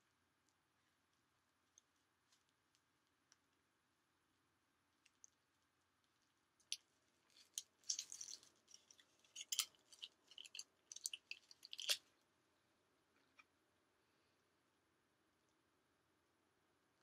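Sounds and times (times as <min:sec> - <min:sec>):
foil crinkling: 0:07.3 - 0:12.0
crunching chips: 0:07.3 - 0:12.1.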